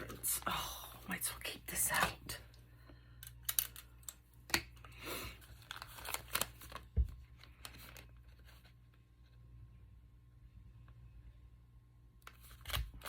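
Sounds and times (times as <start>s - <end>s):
paper crinkling and tearing: 5.3s - 8.7s.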